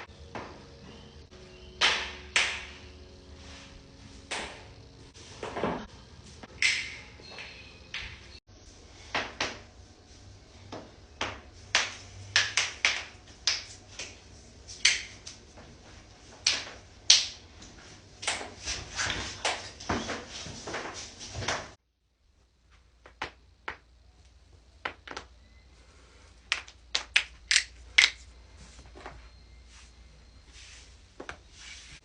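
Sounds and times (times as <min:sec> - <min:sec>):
joints cracking and popping: 0:26.4 - 0:28.3.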